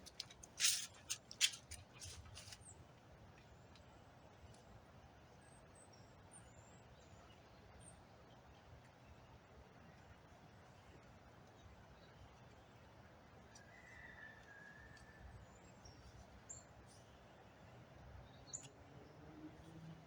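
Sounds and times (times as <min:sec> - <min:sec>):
crinkling tape handling: 0:00.0 - 0:02.7.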